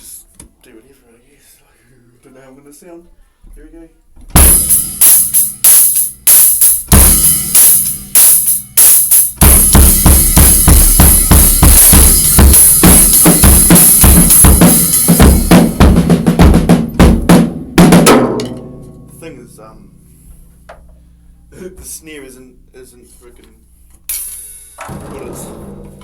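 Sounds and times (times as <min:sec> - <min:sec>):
snare drum: 0:04.4 - 0:18.6
kick drum: 0:09.4 - 0:18.3.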